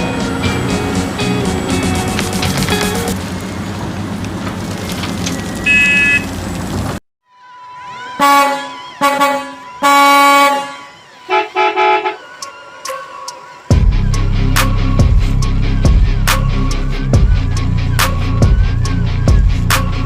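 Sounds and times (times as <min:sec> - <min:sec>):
music: 0:00.0 - 0:03.2, 0:12.4 - 0:20.0
truck horn blasts: 0:05.7 - 0:06.4, 0:07.4 - 0:12.3.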